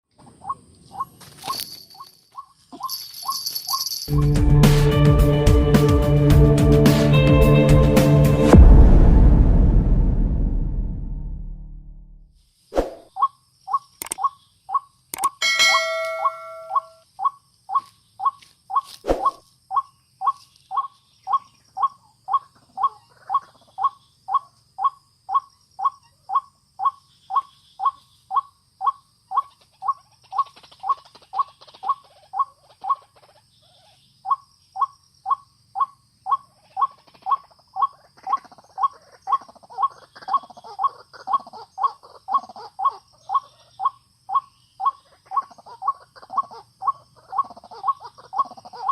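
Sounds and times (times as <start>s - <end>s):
bird calling repeatedly: 13.0s - 48.9s
sharp clicks: 14.0s - 14.3s, 15.1s - 15.4s
short chiming effect: 15.4s - 17.0s.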